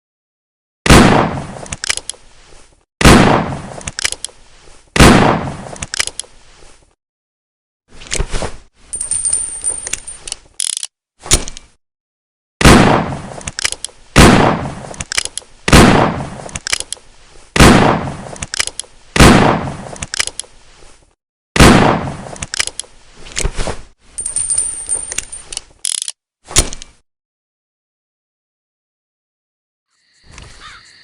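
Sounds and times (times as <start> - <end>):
gun mechanism clicks and rattle: 1.7 - 2.2, 3.8 - 4.4, 5.8 - 6.3, 9.0 - 11.7, 13.4 - 14.0, 14.9 - 15.5, 16.5 - 17.0, 18.4 - 18.9, 20.0 - 20.5, 22.4 - 23.4, 24.2 - 27.0
revolver gunshots: 3.0 - 3.7, 5.0 - 5.6, 12.6 - 13.3, 14.2 - 14.9, 15.7 - 16.4, 17.6 - 18.2, 19.2 - 19.8, 21.6 - 22.2.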